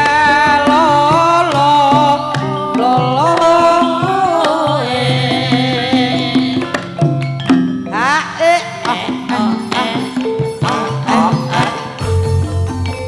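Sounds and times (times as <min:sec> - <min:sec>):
woman singing ornamented melody: 0:00.0 - 0:07.0, 0:07.9 - 0:12.1.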